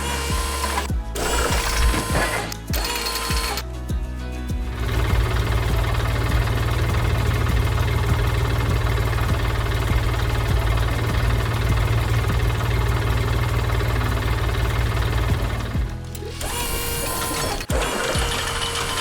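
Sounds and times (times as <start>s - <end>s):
heavy vehicle engine idling: 4.7s - 16.6s.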